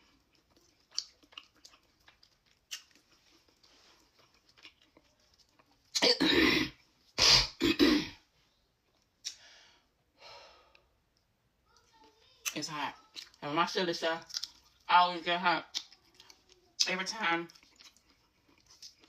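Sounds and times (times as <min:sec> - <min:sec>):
woman coughing: 0:06.0 - 0:08.2.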